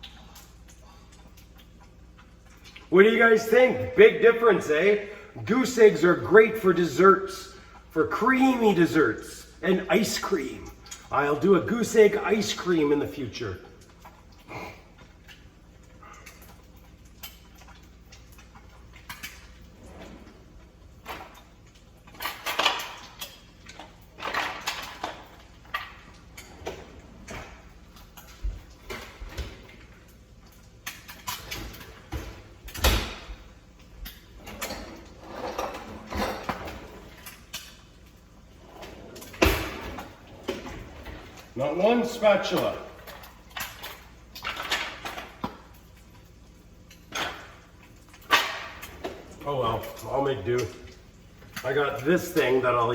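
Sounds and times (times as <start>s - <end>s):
kitchen drawers sliding: 19.7s - 21.3s, 26.3s - 29.8s, 34.3s - 37.3s, 38.6s - 45.5s
utensils clattering: 30.8s - 45.8s.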